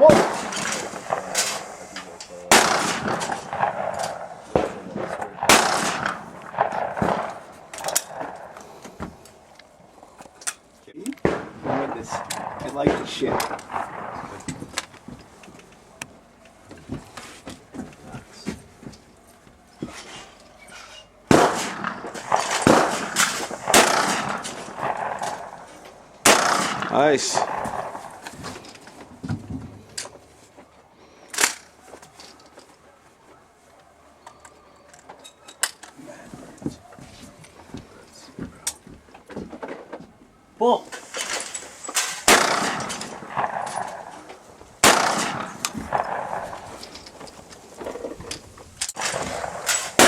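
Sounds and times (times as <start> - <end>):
shotgun reports: 0.0 - 8.9, 11.0 - 14.8, 21.3 - 28.4, 42.2 - 46.9.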